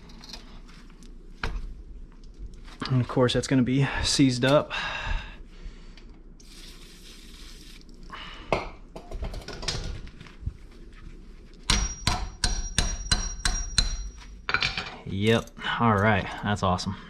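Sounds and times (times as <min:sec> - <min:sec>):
hammer striking metal: 0:11.7 - 0:14.8.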